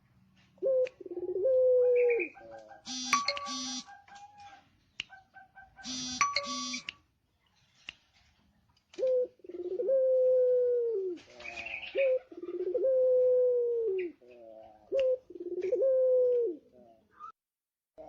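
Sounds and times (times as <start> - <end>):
dove cooing: 0.6 - 6.4, 9.0 - 17.3
high chirping: 2.9 - 4.0, 5.7 - 7.0.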